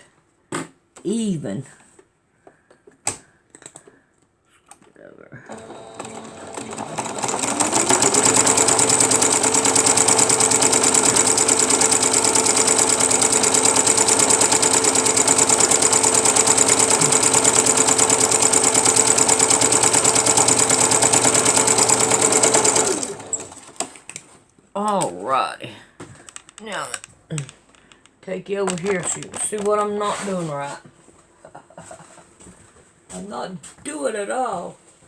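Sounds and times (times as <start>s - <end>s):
sewing machine stitching: 5.5s - 24.0s.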